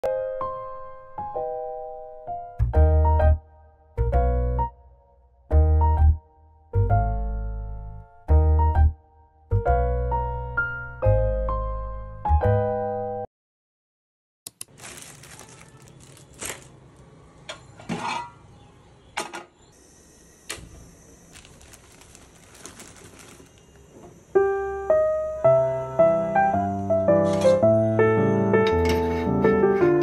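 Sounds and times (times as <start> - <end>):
soft piano music: 0.0 - 13.3, 21.6 - 30.0
objects clicking and rustling: 21.4 - 23.9.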